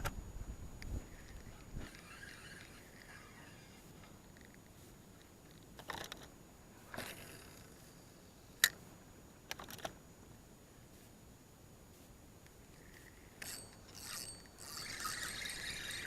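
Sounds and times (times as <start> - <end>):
fishing gear clicks and knocks: 4.0 - 6.3, 9.5 - 10.0, 12.8 - 16.0.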